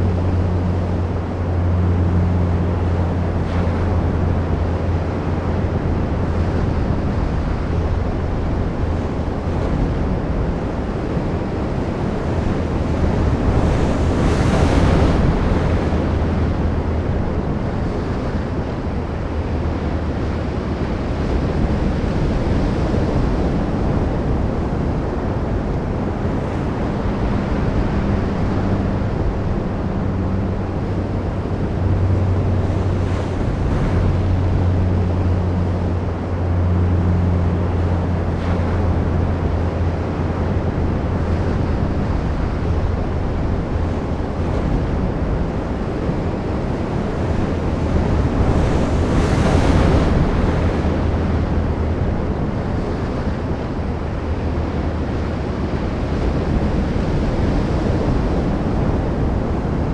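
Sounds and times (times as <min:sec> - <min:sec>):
sea waves washing ashore: 0:00.0 - 0:59.9
wind rumble on microphone: 0:00.0 - 0:59.9.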